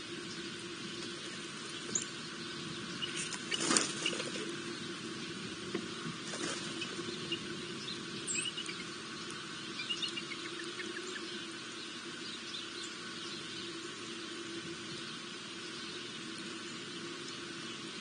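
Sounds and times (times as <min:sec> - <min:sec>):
steady background hum: 0:00.0 - 0:18.0.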